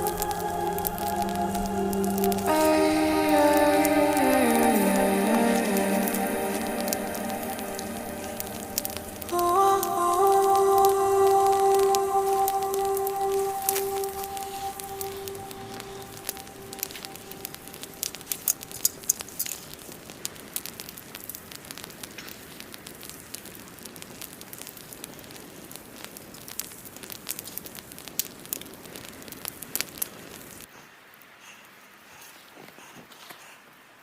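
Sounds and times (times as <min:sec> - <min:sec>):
campfire crackling and popping: 0:00.0 - 0:30.7.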